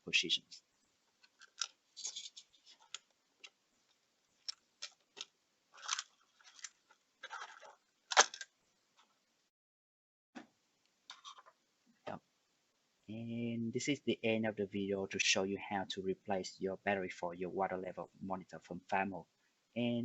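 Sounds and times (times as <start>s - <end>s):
plastic clicks and scrapes: 1.2s - 3.6s, 4.4s - 8.5s, 11.1s - 11.5s.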